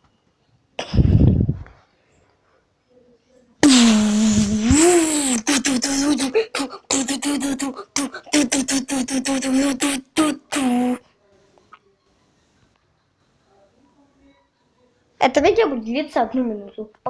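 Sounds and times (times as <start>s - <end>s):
person beatboxing: 3.6s - 11.0s.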